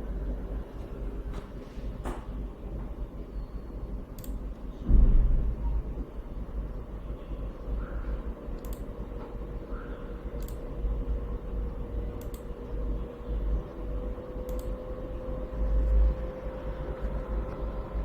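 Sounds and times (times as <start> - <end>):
computer fans humming: 0.0 - 18.0
faint clicks: 4.2 - 4.4, 8.6 - 8.9, 10.4 - 10.6, 12.2 - 12.5, 14.5 - 14.7
low rumble: 4.8 - 7.1.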